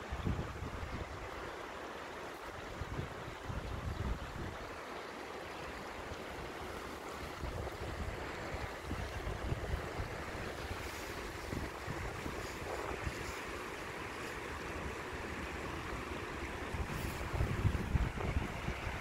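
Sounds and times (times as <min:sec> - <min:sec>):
wind buffeting microphone: 0:00.0 - 0:01.3, 0:02.7 - 0:04.7, 0:07.3 - 0:19.0
floodwater rushing: 0:00.0 - 0:19.0.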